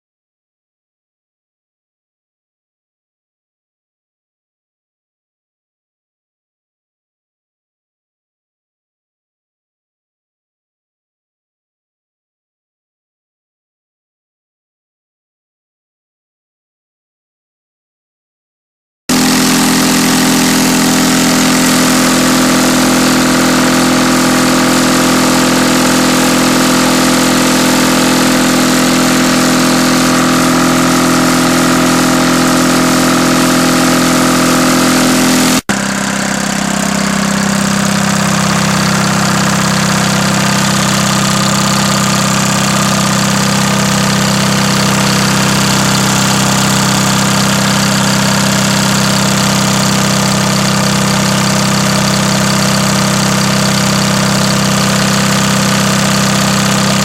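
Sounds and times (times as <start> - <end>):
diesel engine running steadily: 19.1 - 57.0.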